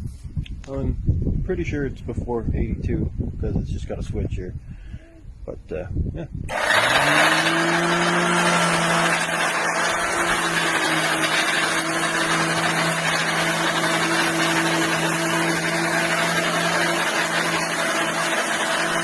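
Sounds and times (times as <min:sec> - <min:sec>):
electric lawn mower running: 0:06.5 - 0:19.0.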